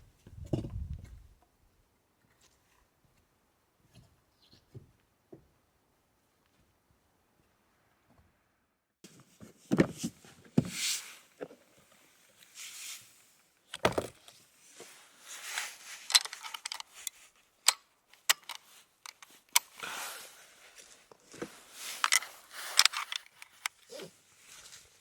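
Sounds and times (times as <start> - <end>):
gear clicking and clinking: 16.0 - 19.7, 22.0 - 23.9.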